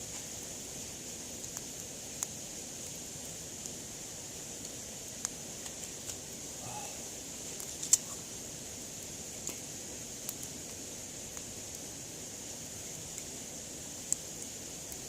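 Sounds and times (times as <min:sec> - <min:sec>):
campfire crackling: 0:00.0 - 0:15.0
steady high hiss: 0:00.0 - 0:15.0.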